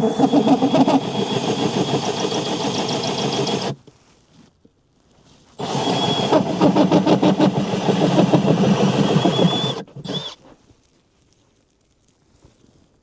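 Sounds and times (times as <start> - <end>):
power drill boring under load: 0.0 - 3.8, 5.6 - 10.4.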